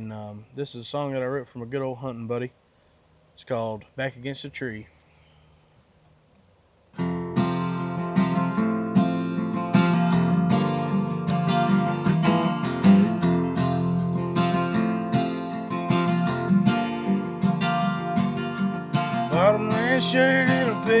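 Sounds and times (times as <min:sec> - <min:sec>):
acoustic guitar strumming: 0:07.0 - 0:21.0.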